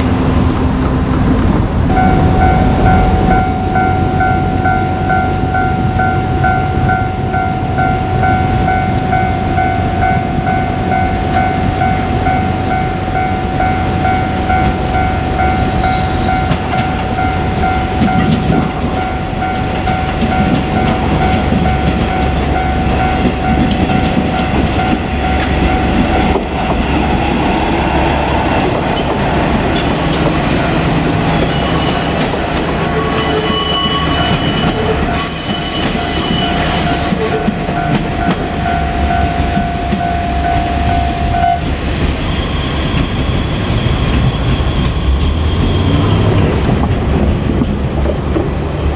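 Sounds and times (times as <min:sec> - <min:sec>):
diesel engine rumble: 0:00.0 - 0:06.4
crossing alarm ringing: 0:01.9 - 0:44.8
high-pitched wheel squeal: 0:29.7 - 0:38.0, 0:38.8 - 0:46.5.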